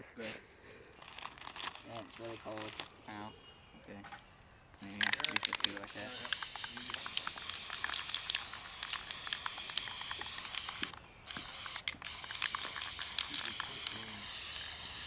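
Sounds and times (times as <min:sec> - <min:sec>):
spray-paint can hissing: 0:05.0 - 0:15.0.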